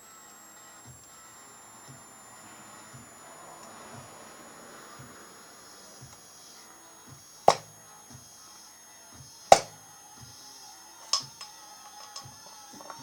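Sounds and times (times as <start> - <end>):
low background noise: 0.0 - 13.0
sharp clicks: 7.1 - 8.3, 9.5 - 9.9, 11.0 - 13.0.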